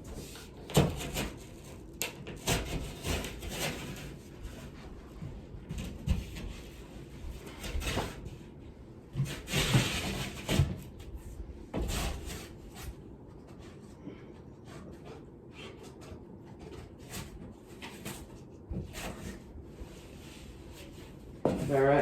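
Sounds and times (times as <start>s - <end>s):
utility knife scraping drywall: 11.8s - 13.0s.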